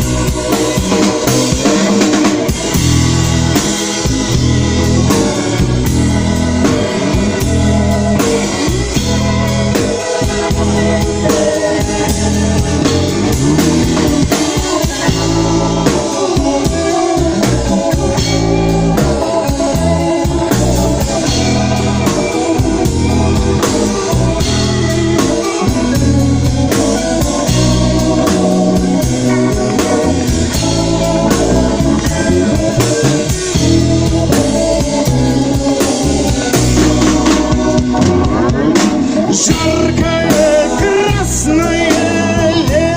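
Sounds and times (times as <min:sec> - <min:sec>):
drum beat: 0:00.0 - 0:42.9
guitar: 0:00.0 - 0:42.9
keyboard: 0:00.0 - 0:42.9.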